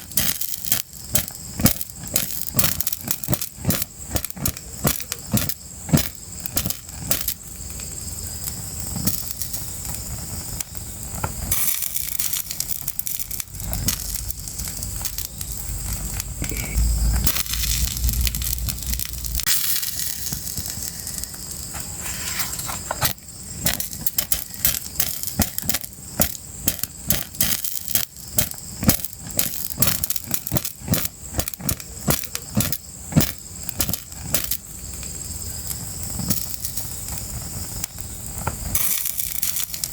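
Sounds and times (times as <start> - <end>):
fire crackling and popping: 0.0 - 39.9
steady hiss: 0.0 - 39.9
low rumble: 13.2 - 20.8.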